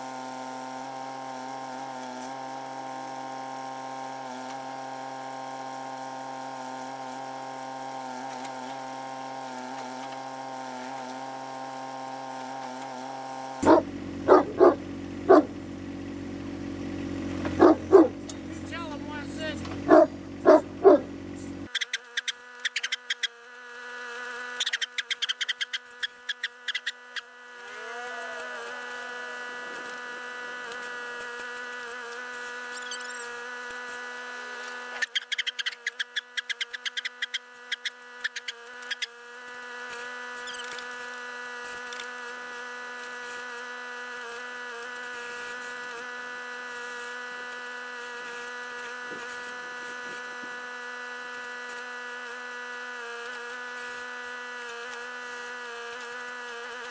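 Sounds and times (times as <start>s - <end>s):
tractor engine buzzing hum: 0.0s - 56.9s.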